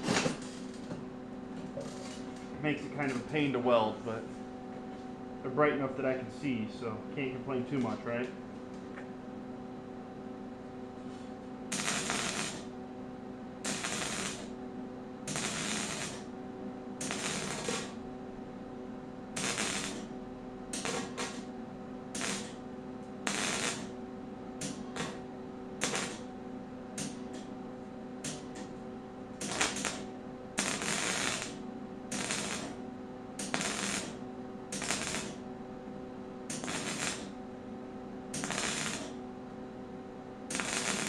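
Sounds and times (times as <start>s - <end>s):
welder steady hum: 0.0s - 41.0s
welding arc crackle: 11.7s - 12.8s, 13.6s - 14.6s, 15.3s - 16.4s, 17.0s - 18.0s, 19.4s - 20.1s, 20.7s - 21.5s, 22.2s - 22.6s, 23.2s - 24.0s, 24.6s - 25.2s, 25.8s - 26.3s, 27.0s - 27.4s, 28.2s - 28.6s, 29.4s - 32.8s, 33.4s - 35.4s, 36.5s - 37.4s, 38.3s - 39.2s, 40.5s - 41.0s.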